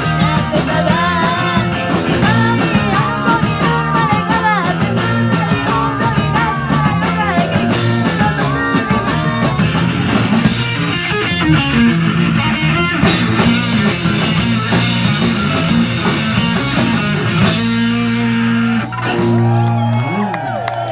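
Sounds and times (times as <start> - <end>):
bass guitar: 0.0 - 20.9
drums: 0.0 - 20.9
electric guitar: 0.0 - 20.9.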